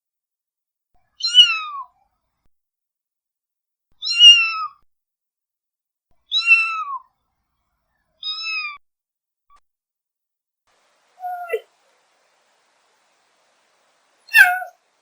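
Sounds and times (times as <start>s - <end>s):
cat meowing: 1.2s - 1.9s, 6.3s - 7.0s, 8.2s - 8.8s, 11.2s - 11.7s, 14.3s - 14.8s.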